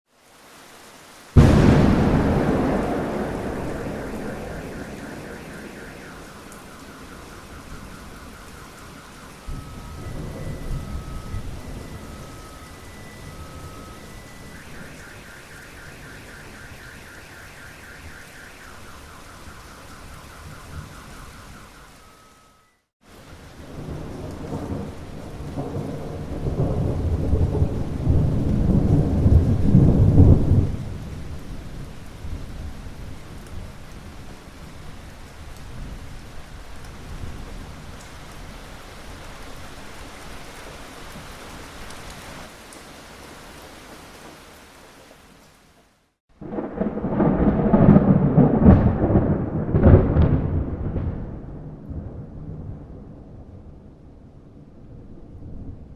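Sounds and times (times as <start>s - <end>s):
steady rain: 0.1s - 55.9s
rumble of thunder: 1.4s - 22.3s, 23.4s - 39.9s, 46.4s - 55.9s
car alarm: 1.4s - 22.9s.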